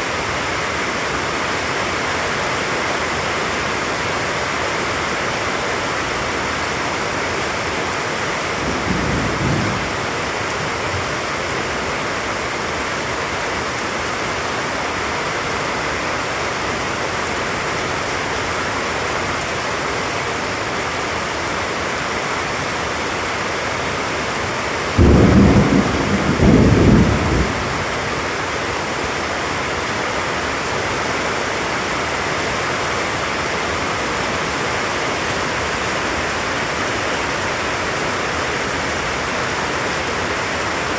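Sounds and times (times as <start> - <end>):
heavy rain falling: 0.0 - 40.9
rumble of thunder: 8.6 - 10.3, 25.0 - 28.1.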